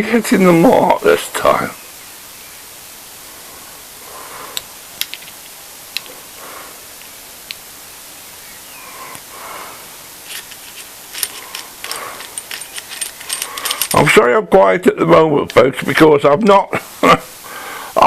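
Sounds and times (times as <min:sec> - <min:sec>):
steady hiss: 0:00.0 - 0:18.0
soft breaths: 0:03.2 - 0:05.0, 0:06.0 - 0:07.3, 0:08.4 - 0:14.0, 0:17.4 - 0:18.0.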